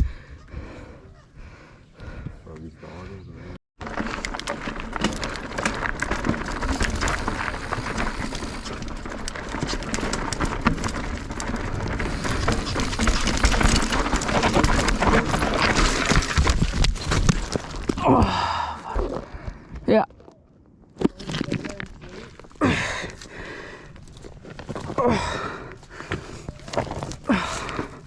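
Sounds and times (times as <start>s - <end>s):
bike rattling over rocks: 3.8s - 18.2s, 21.0s - 28.0s
steady rushing noise: 6.5s - 8.8s, 12.0s - 16.6s.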